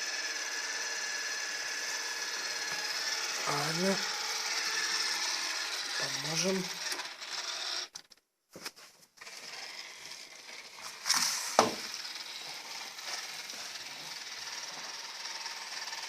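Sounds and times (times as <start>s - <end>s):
robot vacuum whirring: 0.0s - 8.1s, 9.2s - 16.0s
scrape: 10.8s - 11.6s
sharp knock: 11.6s - 11.9s.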